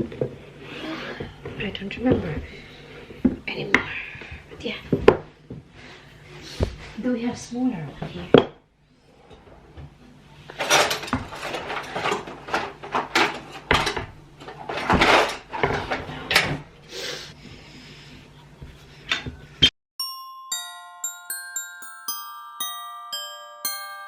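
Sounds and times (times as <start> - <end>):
kitchen utensils clattering: 10.5 - 16.6.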